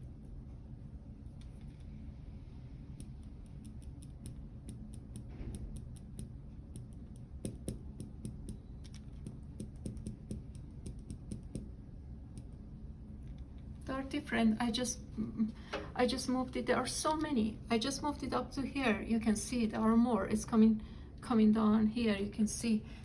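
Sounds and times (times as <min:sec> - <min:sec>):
low room hum: 0:00.0 - 0:23.0
fingers tapping on touchscreen: 0:03.0 - 0:12.6.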